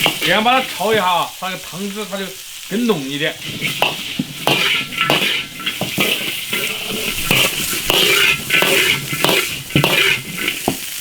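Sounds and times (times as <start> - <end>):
spatula scraping and knocking wok: 0.0 - 2.0, 2.8 - 11.0
chicken sizzling in wok: 0.0 - 11.0.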